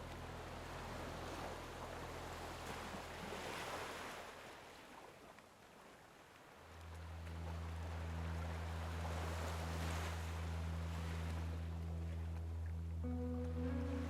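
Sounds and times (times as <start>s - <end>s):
low steady hum: 0.0s - 3.5s, 6.6s - 14.0s
ocean waves washing in: 6.8s - 12.4s.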